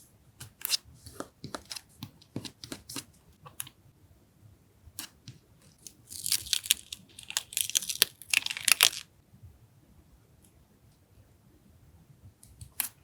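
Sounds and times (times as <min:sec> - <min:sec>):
paper rustling and tearing: 0:05.9 - 0:09.0.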